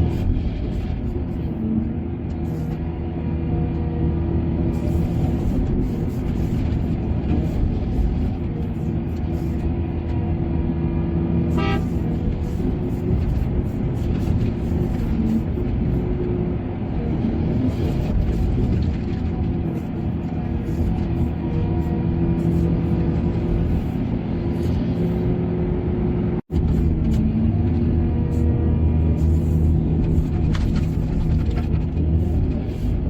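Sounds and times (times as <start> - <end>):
diesel machinery droning: 0.0 - 33.0
brief horn toot: 11.5 - 12.0.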